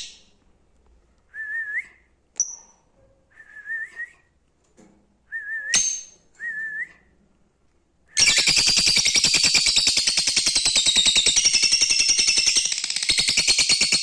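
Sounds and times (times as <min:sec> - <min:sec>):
birds warbling whistles: 0:08.2 - 0:14.0.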